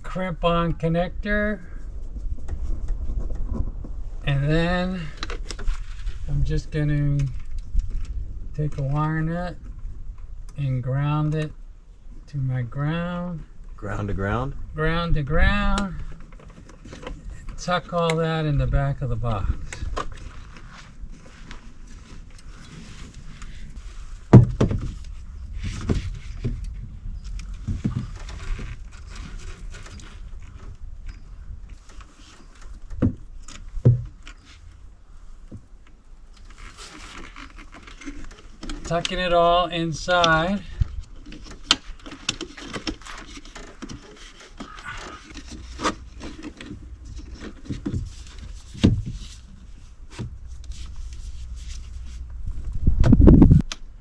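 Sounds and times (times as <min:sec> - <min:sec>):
wires rustling: 0:13.6 - 0:53.7.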